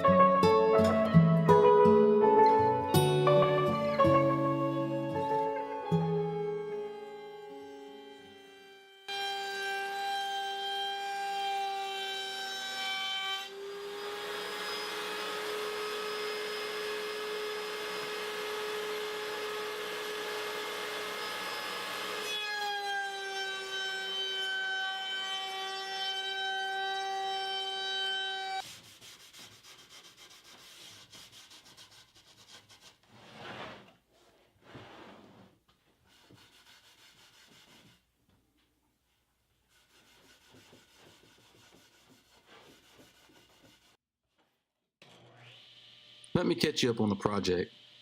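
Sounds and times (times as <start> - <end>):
wood being cut: 5.9 - 29.4, 45.0 - 48.0
power tool whine: 13.4 - 25.3, 45.0 - 46.4, 47.0 - 48.0
scraping and rubbing on wood: 28.6 - 38.1, 39.1 - 44.0.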